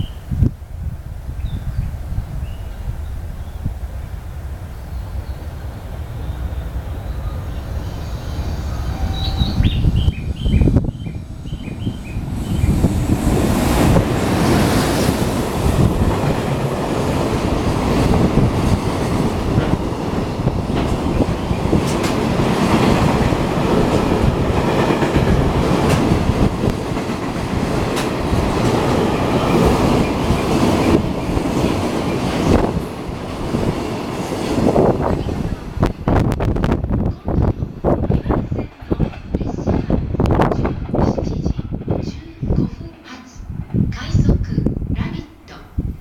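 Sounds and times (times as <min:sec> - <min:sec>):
freight train wheels rumbling: 0:00.0 - 0:46.0
clickety-clack over rail joints: 0:12.7 - 0:35.2, 0:38.0 - 0:43.9.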